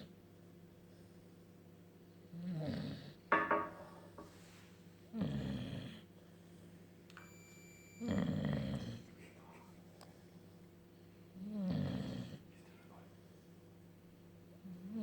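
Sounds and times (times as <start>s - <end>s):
dog snoring: 2.4s - 3.2s, 5.1s - 6.1s, 8.0s - 9.1s, 11.4s - 12.4s.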